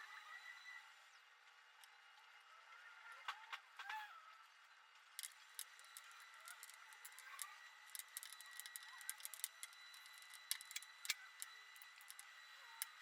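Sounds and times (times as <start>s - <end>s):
small clicks and taps: 5.2s - 13.0s
faint steady high tone: 5.6s - 13.0s.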